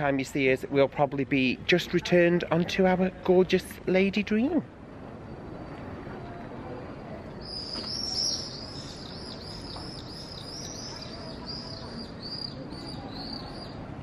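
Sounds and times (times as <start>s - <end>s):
low outdoor murmur: 0.0s - 14.0s
small bird chirping: 7.4s - 13.8s.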